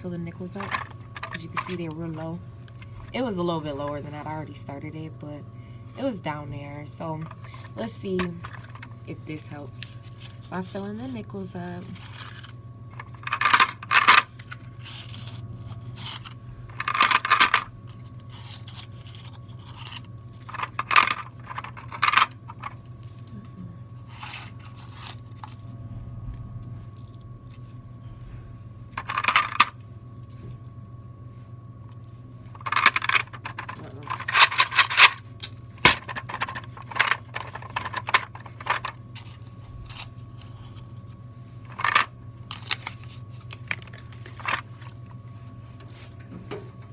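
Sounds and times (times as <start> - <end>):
low machine hum: 0.0 - 46.9
coins clinking into machine: 10.2 - 17.7, 18.3 - 23.4, 24.1 - 25.6, 29.0 - 29.8, 32.6 - 39.0, 41.7 - 43.0.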